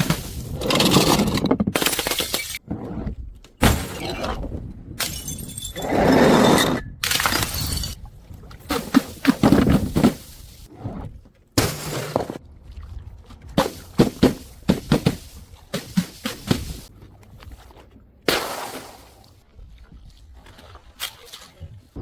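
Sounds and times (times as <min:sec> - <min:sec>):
glass bottles smashing: 0:05.0 - 0:05.8, 0:07.1 - 0:08.0.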